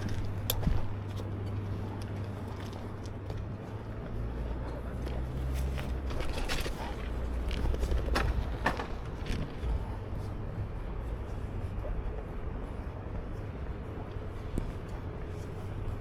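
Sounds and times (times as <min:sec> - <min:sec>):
street traffic rumble: 0:00.0 - 0:16.0.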